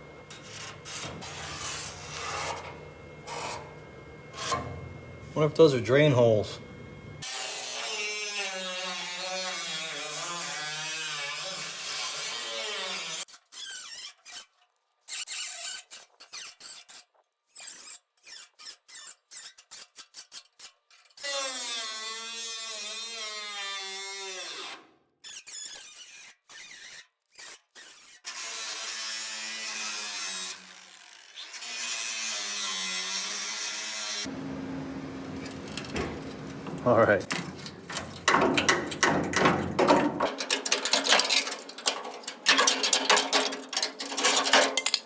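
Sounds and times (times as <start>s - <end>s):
handheld power tool whirring: 0.3s - 4.7s, 7.2s - 34.3s.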